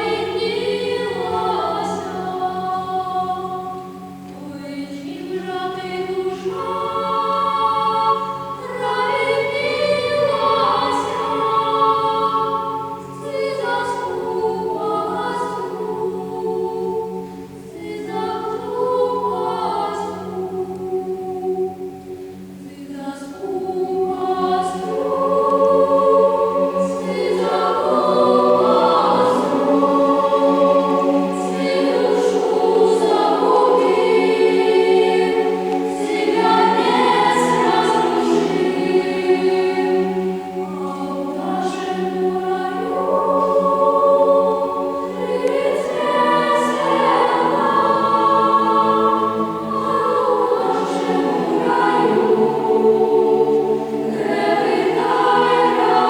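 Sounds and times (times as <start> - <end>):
choir singing: 0.0 - 56.0.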